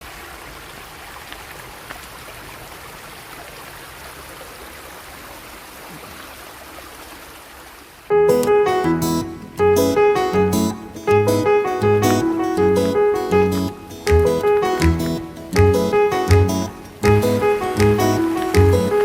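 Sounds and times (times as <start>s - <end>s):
water flowing over stones: 0.0s - 8.1s, 16.9s - 19.0s
plucked strings and piano music: 8.1s - 19.0s.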